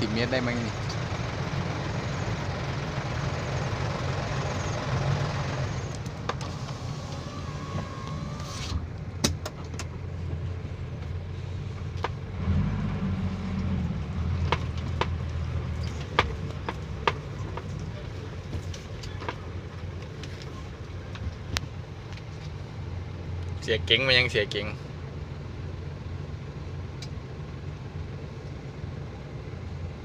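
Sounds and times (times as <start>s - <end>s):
diesel engine revving: 0.0s - 9.2s, 9.8s - 19.8s.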